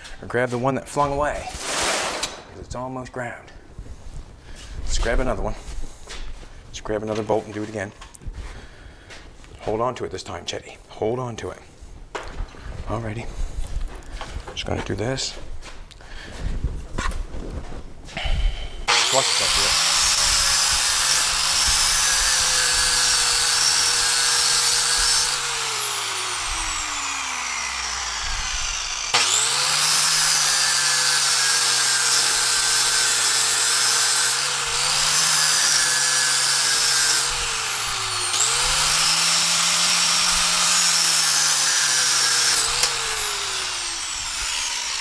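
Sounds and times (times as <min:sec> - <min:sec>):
electric grinder grinding metal: 0:18.8 - 0:45.0.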